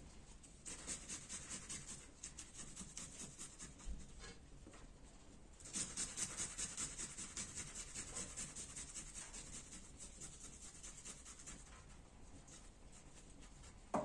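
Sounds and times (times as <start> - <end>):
food rasping on hand grater: 0.6 - 3.8, 5.6 - 11.8.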